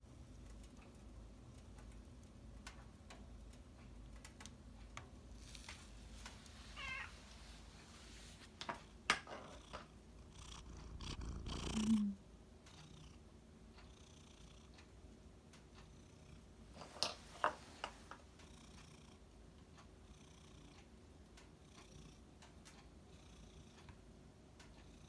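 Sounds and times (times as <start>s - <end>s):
cat purring: 5.4s - 13.2s.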